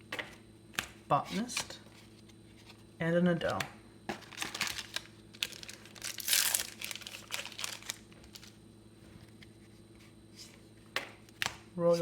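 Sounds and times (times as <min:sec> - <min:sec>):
wrapper crinkling and tearing: 0:04.2 - 0:08.6.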